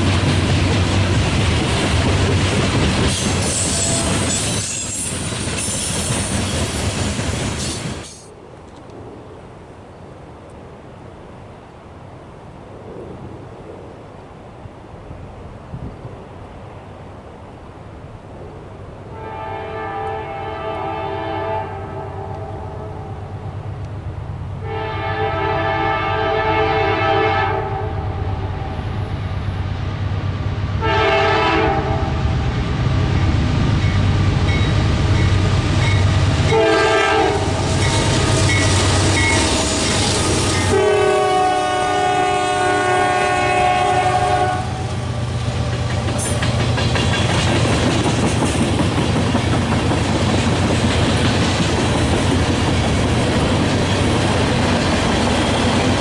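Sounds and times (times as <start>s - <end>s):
train wheel clatter: 0.0s - 8.3s, 37.4s - 40.8s, 44.8s - 56.0s
locomotive rumble: 0.0s - 8.4s, 22.2s - 56.0s
train horn blasts: 3.4s - 5.1s, 19.1s - 23.4s, 24.6s - 28.8s, 30.8s - 32.2s, 36.3s - 44.9s.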